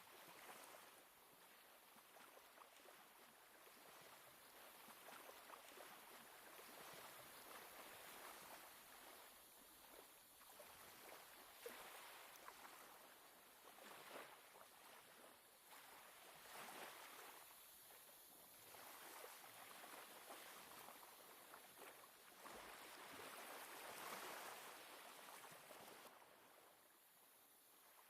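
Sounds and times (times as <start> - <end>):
small waves lapping on shore: 0.0 - 28.0
small water splashes: 0.1 - 26.8.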